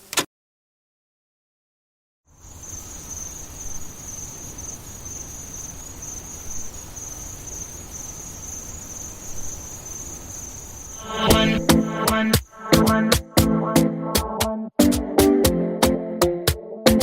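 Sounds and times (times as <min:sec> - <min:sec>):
crickets chirring: 0:02.3 - 0:13.0.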